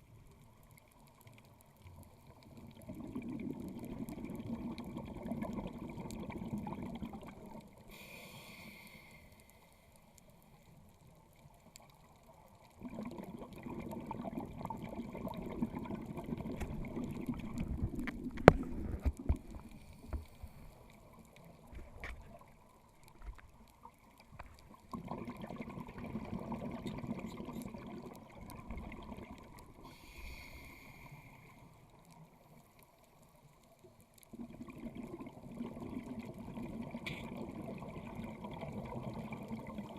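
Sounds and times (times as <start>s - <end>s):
bubbling exhaust underwater: 2.3s - 9.2s, 12.7s - 22.5s, 24.3s - 32.0s, 34.3s - 39.9s
regulator inhale hiss: 7.9s - 10.1s, 19.7s - 20.9s, 29.8s - 31.8s.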